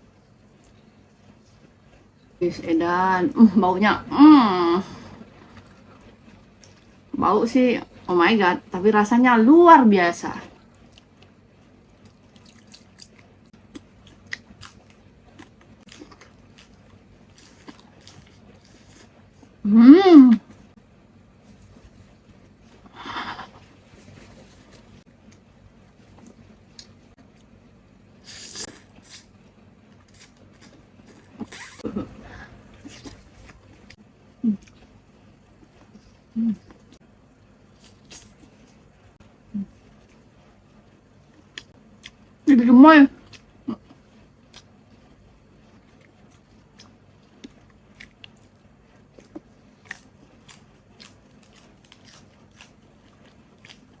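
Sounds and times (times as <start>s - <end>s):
chewing and mouth noises: 10.6s - 19.6s, 43.2s - 54.0s
slurp or crunch: 15.9s - 19.1s.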